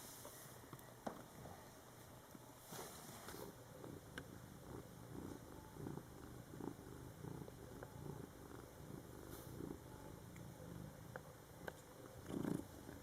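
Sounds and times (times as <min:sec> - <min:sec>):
cat purring: 0:02.6 - 0:13.0.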